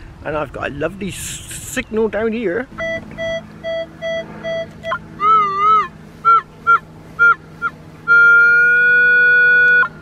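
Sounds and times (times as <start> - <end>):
metal detector wavering tone: 2.7 - 10.0
metal detector beeps: 2.8 - 9.9
short high blips: 2.8 - 10.0.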